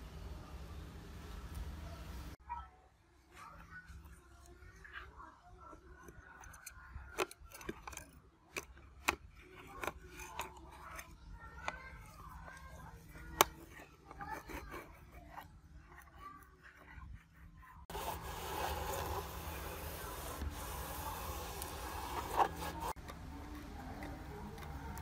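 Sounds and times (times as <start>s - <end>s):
rasping noise: 9.2s - 25.0s
scraping on a workpiece: 17.8s - 23.0s.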